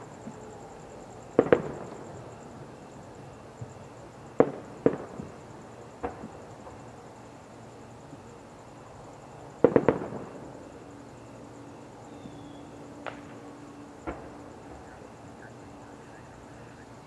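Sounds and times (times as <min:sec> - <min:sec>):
fireworks bangs: 0:01.3 - 0:02.4, 0:03.6 - 0:05.4, 0:06.0 - 0:06.8, 0:09.6 - 0:10.6, 0:13.0 - 0:15.1.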